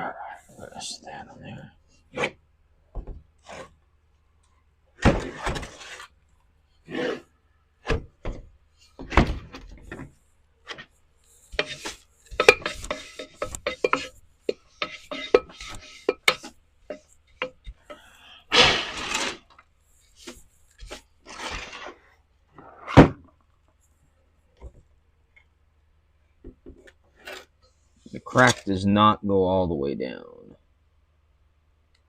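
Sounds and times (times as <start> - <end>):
scraping rustle: 5.2 - 6.2, 9.6 - 23.0
ceramic pot clinking and knocking: 11.6 - 18.0.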